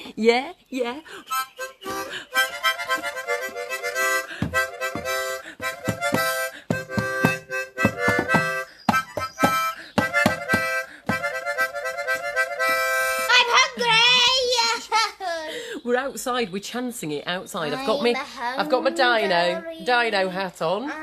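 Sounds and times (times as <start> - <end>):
harmonica playing bouncy tune: 1.2 - 13.8, 18.6 - 19.9.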